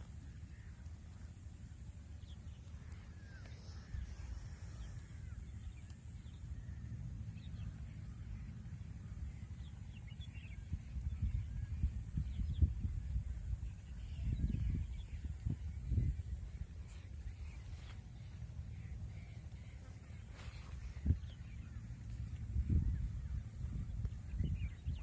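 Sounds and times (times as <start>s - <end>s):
faint bird calls: 0.0s - 12.5s, 13.3s - 25.0s.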